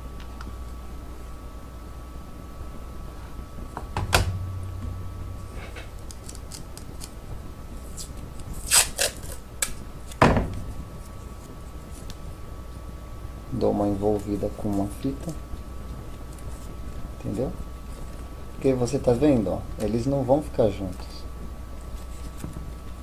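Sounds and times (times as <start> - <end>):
sharp knocks on bench: 3.8 - 5.9.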